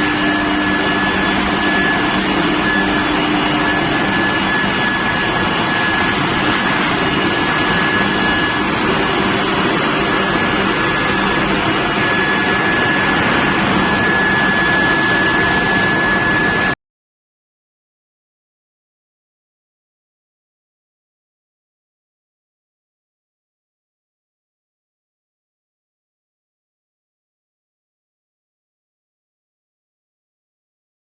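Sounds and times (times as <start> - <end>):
high-pitched whine: 0.0 - 16.8
induction furnace running: 0.0 - 16.8
low machine hum: 0.0 - 16.8.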